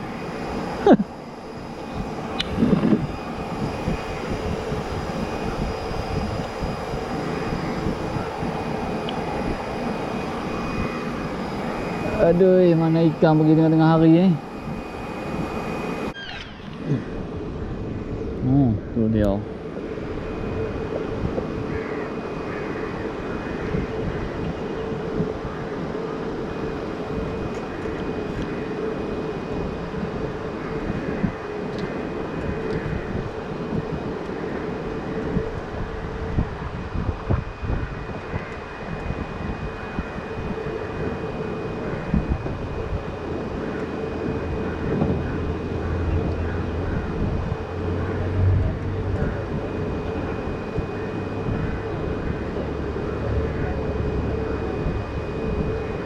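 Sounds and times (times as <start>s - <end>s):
faint high whine: 0.0s - 56.0s
mechanical hum: 0.0s - 56.0s
small ticks: 2.4s - 2.6s.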